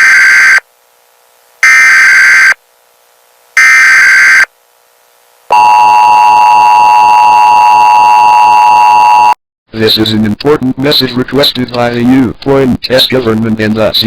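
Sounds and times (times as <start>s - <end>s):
harsh digital data bursts: 0.0s - 0.6s, 1.6s - 2.6s, 3.6s - 4.5s.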